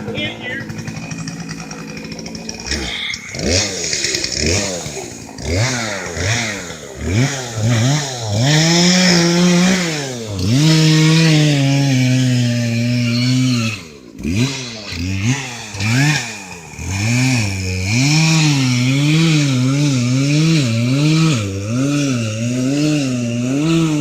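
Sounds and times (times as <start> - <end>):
chainsaw revving: 0.0 - 24.0.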